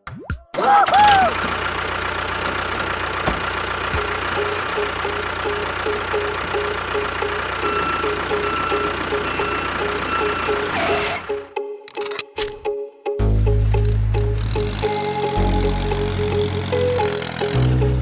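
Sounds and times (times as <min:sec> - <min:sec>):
engine-like running sound: 0:00.9 - 0:12.6, 0:13.5 - 0:18.0.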